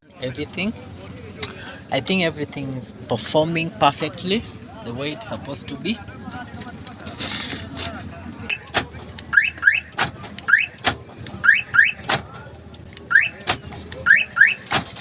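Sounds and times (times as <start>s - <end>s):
car alarm siren chirps: 9.3s - 10.8s, 11.4s - 12.1s, 13.1s - 14.7s.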